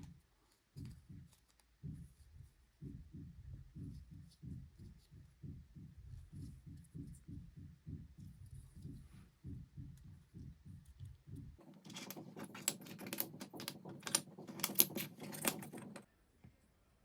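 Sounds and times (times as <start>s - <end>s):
soft low thumps: 0.8s - 11.6s.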